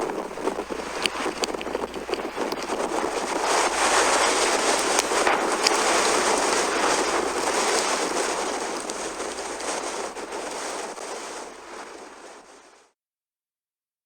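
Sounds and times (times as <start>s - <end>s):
sharp ticks: 0.0s - 10.6s
rushing storm wind: 0.0s - 12.8s.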